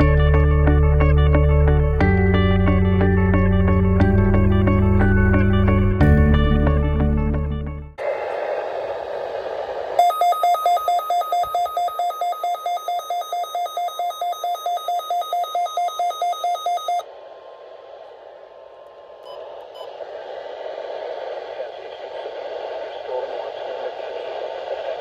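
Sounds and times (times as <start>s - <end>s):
music: 0.0s - 8.0s
faint steady tone: 8.0s - 17.2s
rapid two-tone alert beeping: 10.0s - 17.0s
radio static hiss: 19.3s - 25.0s.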